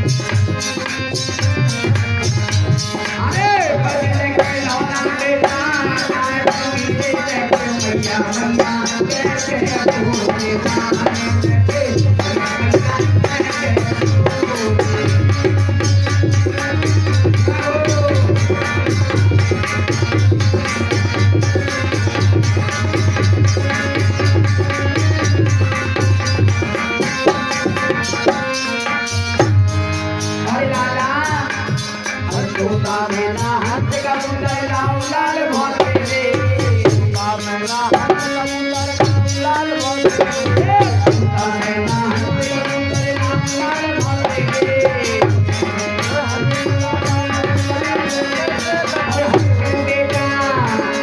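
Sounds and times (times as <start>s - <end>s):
rattling percussion: 0.0s - 51.0s
hand drum playing: 2.2s - 29.9s.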